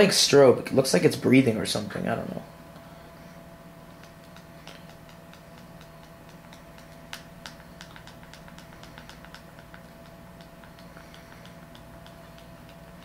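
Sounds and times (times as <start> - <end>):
low electrical hum: 0.0 - 13.0
rapid sharp clicks: 3.8 - 13.0.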